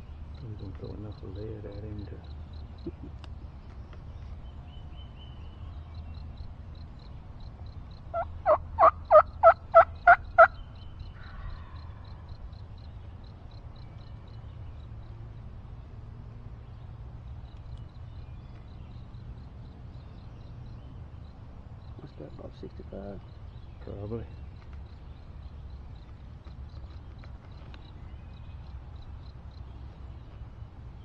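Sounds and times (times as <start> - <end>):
wild turkey calling: 8.1 - 12.1.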